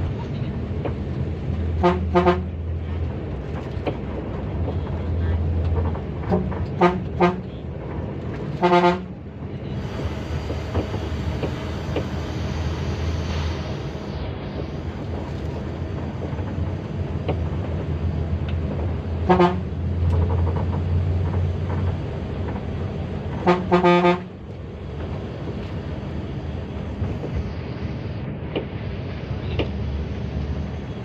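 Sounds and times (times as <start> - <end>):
bus engine drone: 0.0 - 31.0
bus horn blasts: 1.7 - 2.7, 6.3 - 7.6, 8.5 - 9.2, 19.1 - 20.3, 23.3 - 24.4.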